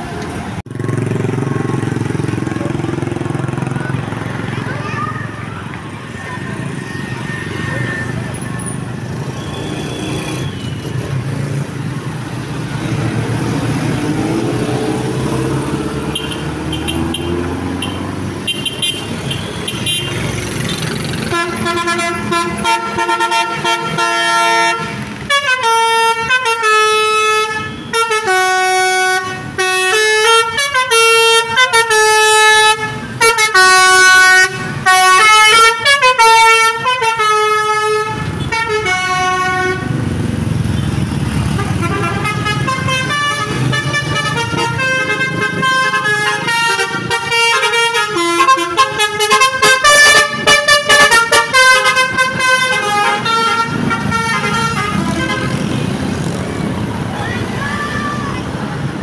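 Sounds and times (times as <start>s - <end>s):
vehicle noise: 0.0s - 59.0s
multi-tone bus horn tune: 16.0s - 40.0s, 41.5s - 55.9s.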